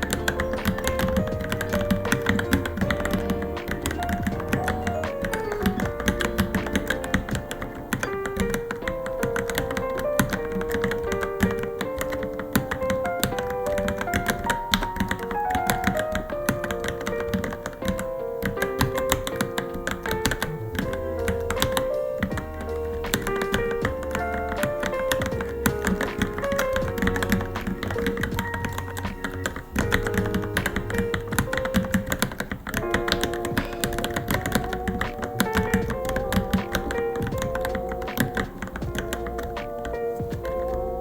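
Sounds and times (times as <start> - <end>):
background music with melody: 0.0 - 41.0.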